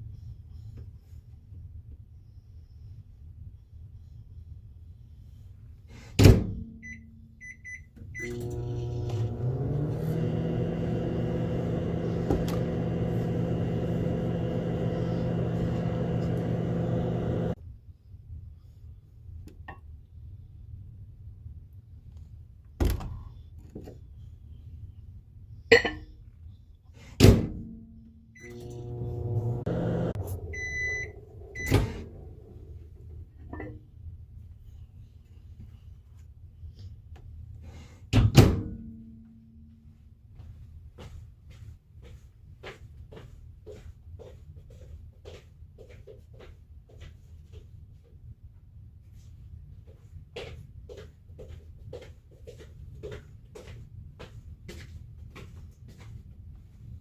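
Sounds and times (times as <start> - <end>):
microwave oven humming: 8.2 - 17.6, 28.4 - 33.7
microwave door shutting: 31.6 - 32.2.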